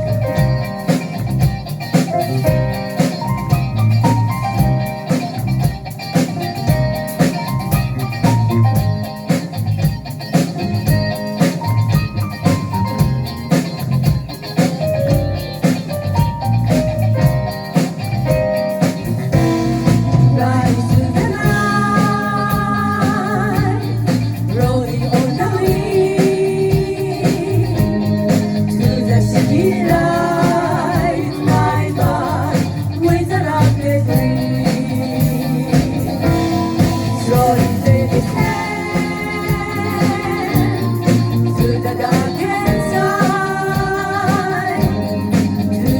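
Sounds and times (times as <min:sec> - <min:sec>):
jazz-funk band music: 0:00.0 - 0:45.9
person singing: 0:20.1 - 0:45.9.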